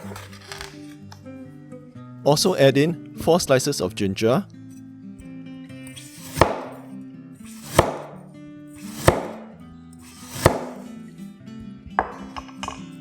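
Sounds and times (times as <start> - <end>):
background music: 0.0 - 13.0
sharp knocks: 9.0 - 9.5.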